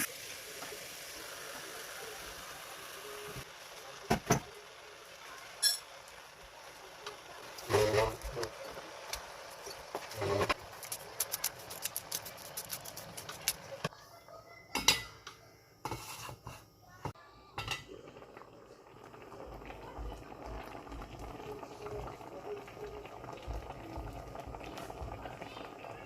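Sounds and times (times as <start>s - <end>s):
liquid simmering: 0.1s - 13.9s, 17.8s - 26.0s
metal utensils clinking: 5.6s - 5.9s.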